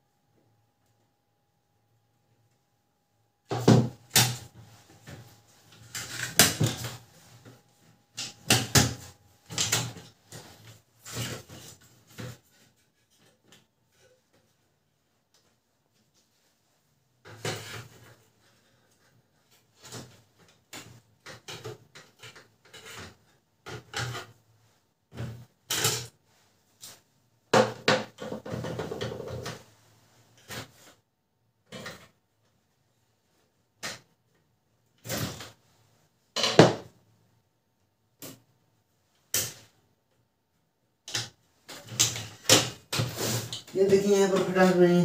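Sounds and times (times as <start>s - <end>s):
plastic covers clicking and knocking: 5.8s - 7.1s, 8.1s - 10.1s, 27.6s - 29.6s, 36.4s - 36.9s, 41.1s - 44.6s.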